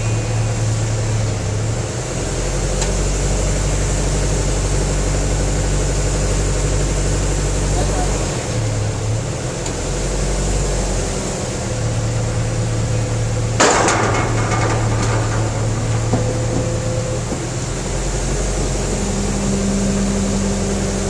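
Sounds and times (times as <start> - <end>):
engine running: 0.0 - 21.0
metallic pipe clank: 13.6 - 19.1.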